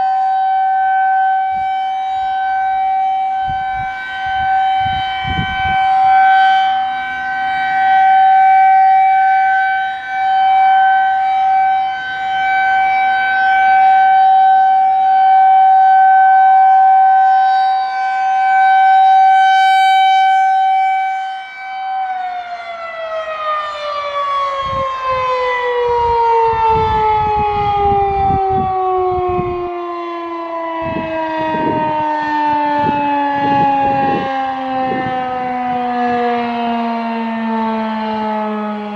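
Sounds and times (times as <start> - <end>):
electromechanical siren winding down: 0.0 - 38.9.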